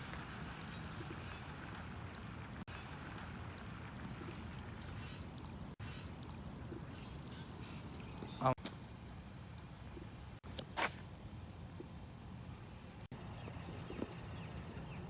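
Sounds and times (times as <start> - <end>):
floodwater rushing: 0.0 - 11.7.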